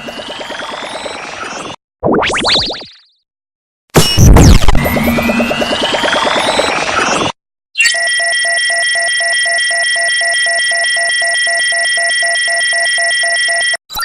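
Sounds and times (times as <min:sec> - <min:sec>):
pulsing low beep: 0:04.0 - 0:07.2
high electronic tones: 0:04.0 - 0:08.0.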